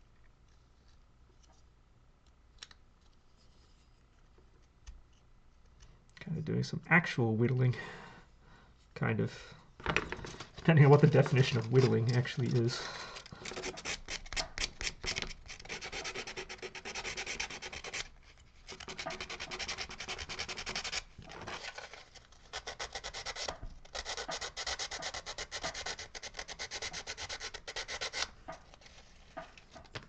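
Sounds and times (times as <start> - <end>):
hand scraping carved wood: 10.4 - 21.1, 22.5 - 29.0.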